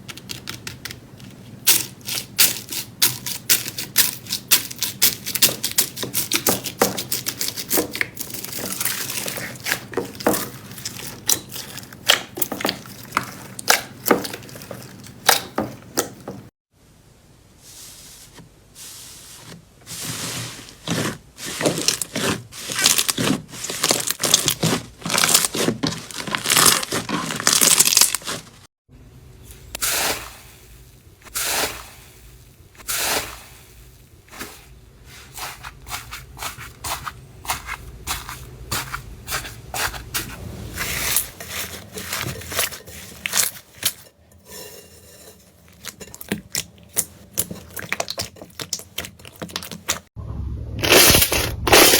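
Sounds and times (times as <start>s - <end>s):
slime crackling and popping: 21.9s - 28.6s.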